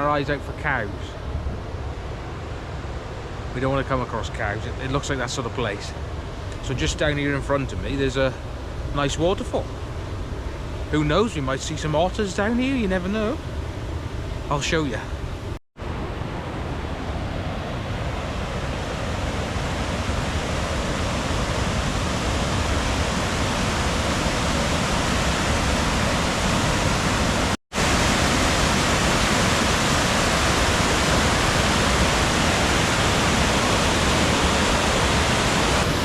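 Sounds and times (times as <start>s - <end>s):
waterfall rushing: 18.0s - 36.0s.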